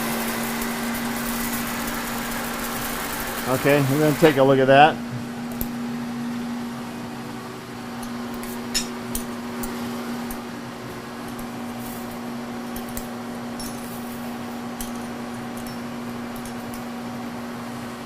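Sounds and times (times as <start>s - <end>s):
electric motor hum: 0.0s - 13.4s.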